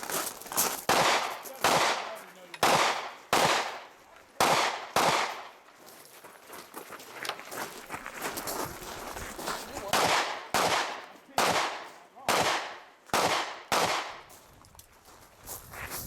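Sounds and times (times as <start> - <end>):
rifle shots with echo: 0.9 - 5.6, 9.8 - 14.3.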